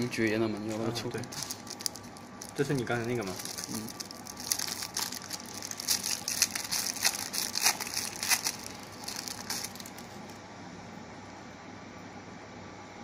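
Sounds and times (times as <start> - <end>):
packaging crinkling: 0.0 - 10.4.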